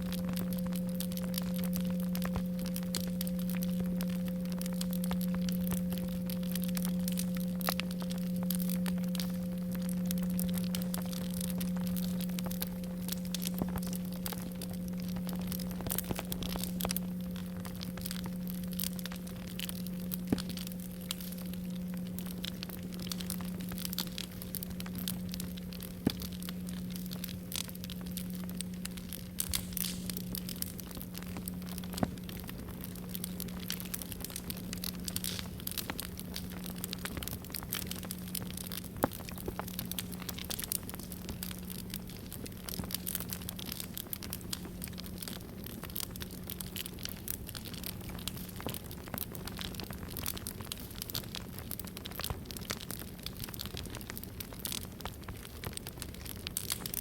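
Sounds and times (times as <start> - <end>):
singing bowl ringing: 0.0 - 27.0
campfire crackling: 0.0 - 57.0.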